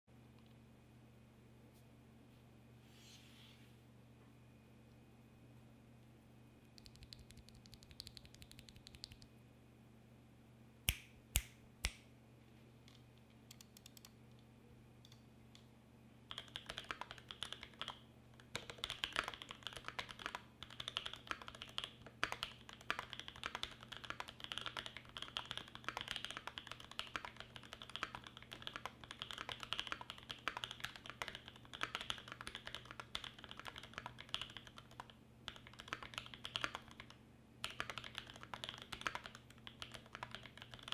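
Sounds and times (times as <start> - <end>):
mechanical keyboard typing: 6.8 - 9.2, 13.5 - 14.1, 16.3 - 40.9
sharp keyboard clacks: 6.8 - 9.3, 16.3 - 40.9.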